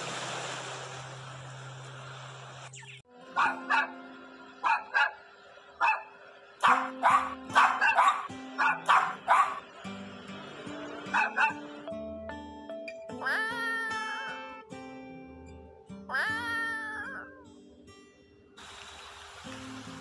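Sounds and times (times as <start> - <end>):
background music: 3.1 - 5.2, 6.6 - 17.8
dog barking: 3.3 - 4.0, 4.6 - 5.2, 5.8 - 9.7, 11.1 - 11.7.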